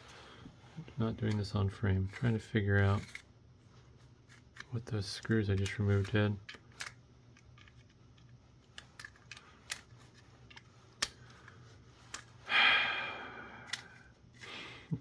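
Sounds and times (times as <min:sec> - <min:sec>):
plastic parts clicking: 0:04.3 - 0:12.4, 0:13.6 - 0:14.5.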